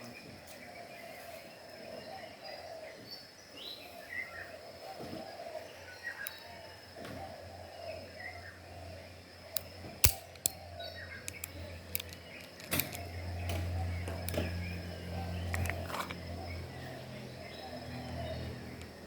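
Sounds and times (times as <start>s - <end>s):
airsoft pistol crack: 9.6s - 10.7s.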